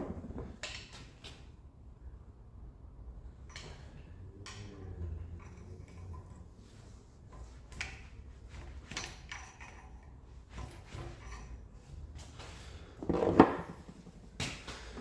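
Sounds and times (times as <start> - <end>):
metal tools clanking: 3.4 - 6.6, 8.6 - 11.8.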